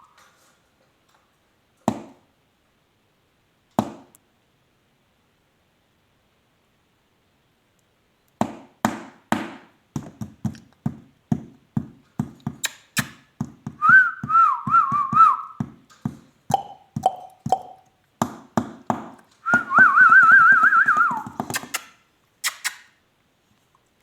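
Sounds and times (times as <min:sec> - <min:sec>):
regular taps: 0:08.3 - 0:21.9.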